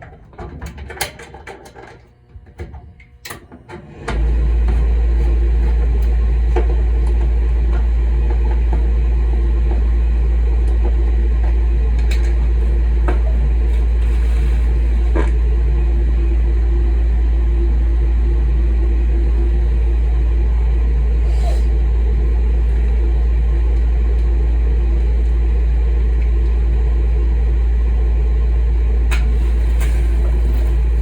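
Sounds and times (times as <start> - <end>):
blower motor running: 0.0 - 31.0.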